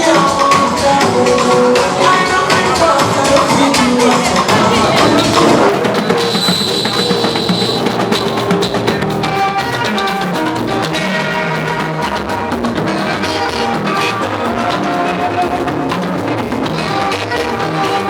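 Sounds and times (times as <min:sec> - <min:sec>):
steady drum beat: 0:00.0 - 0:18.0
pitched notes: 0:01.6 - 0:10.4.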